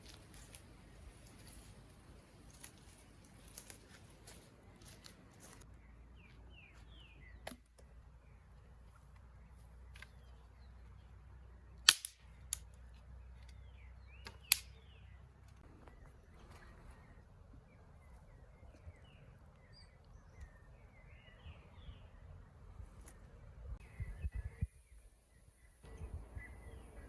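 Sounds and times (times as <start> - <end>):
sharp cracks: 11.8 - 12.7, 14.2 - 14.8.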